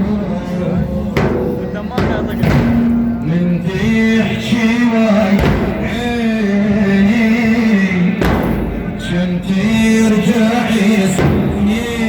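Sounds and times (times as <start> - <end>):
man chanting slow melody: 0.0 - 12.0
thump: 1.2 - 3.2, 5.2 - 6.2, 8.2 - 9.1, 11.1 - 11.8.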